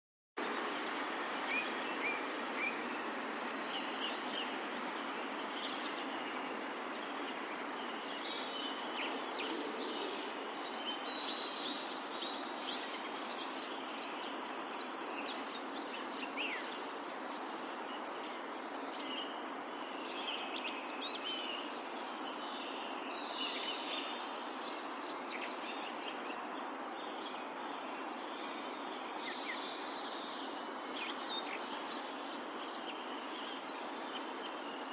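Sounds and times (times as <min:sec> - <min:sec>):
river rushing: 0:00.4 - 0:24.4.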